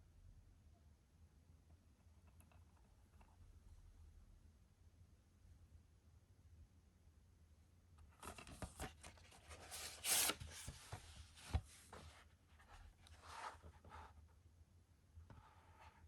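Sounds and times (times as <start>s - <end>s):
plastic scrape: 9.4s - 10.8s.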